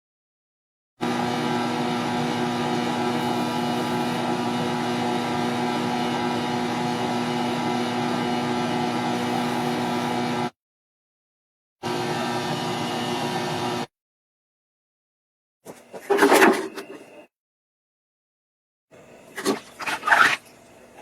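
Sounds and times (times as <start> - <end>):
machine motor droning: 1.0 - 10.5, 11.8 - 13.9.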